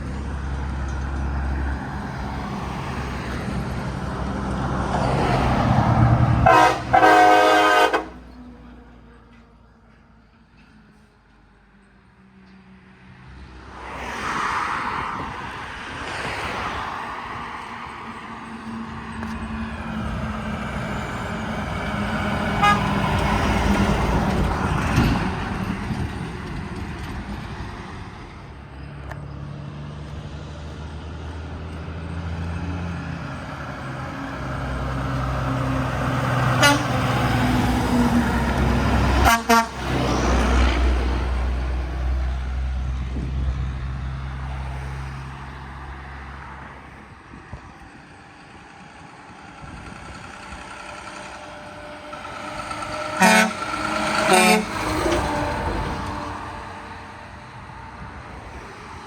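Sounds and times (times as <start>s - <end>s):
heavy trucks passing: 0.0s - 59.0s
short horn toots: 6.4s - 8.2s, 22.6s - 22.9s, 36.6s - 36.9s, 53.2s - 54.9s.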